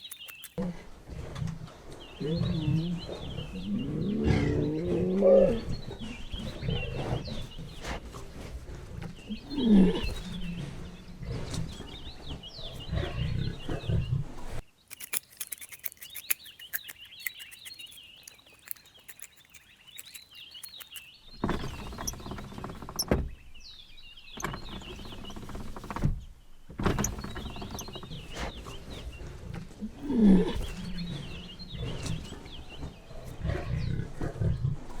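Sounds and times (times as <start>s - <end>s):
rapid clicks: 0.0s - 0.6s, 14.9s - 23.0s
small birds chirping: 0.0s - 35.0s.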